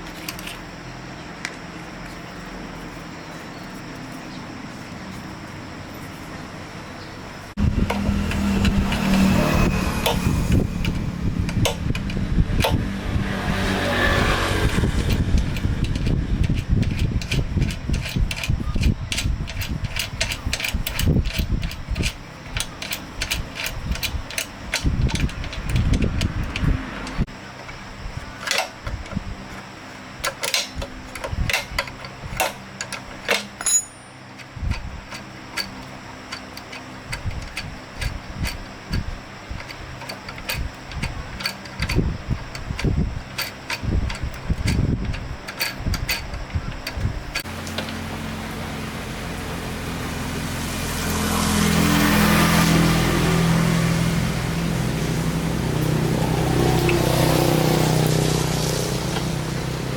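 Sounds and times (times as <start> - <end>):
generator engine humming: 0.0 - 59.9.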